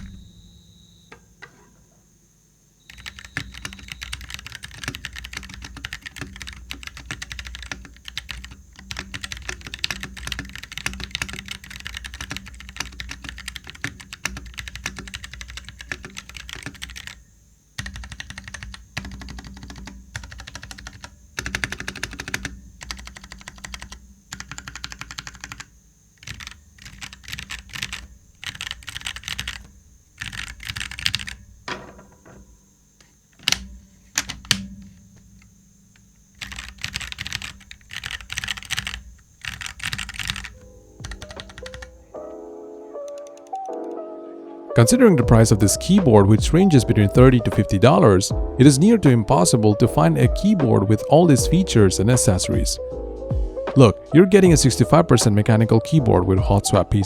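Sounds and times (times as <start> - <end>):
mechanical keyboard typing: 0.0 - 0.3, 2.9 - 32.4, 33.0 - 42.2, 43.0 - 43.9.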